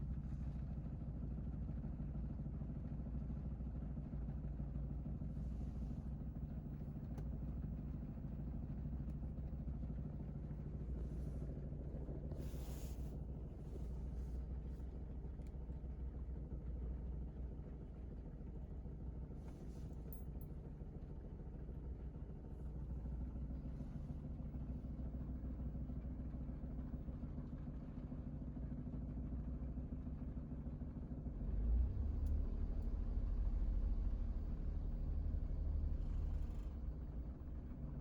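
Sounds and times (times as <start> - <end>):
van engine idling: 2.7 - 27.2.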